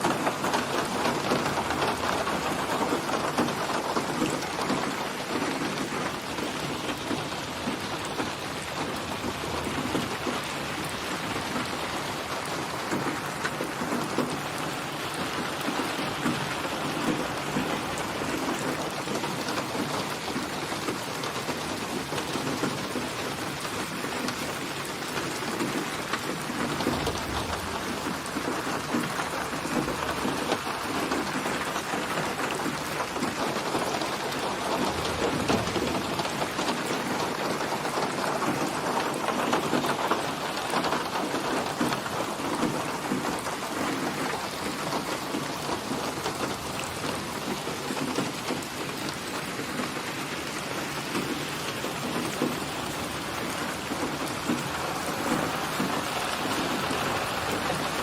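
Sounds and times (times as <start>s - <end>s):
dense rainfall: 0.0s - 58.0s
thunder rumble: 26.5s - 38.2s.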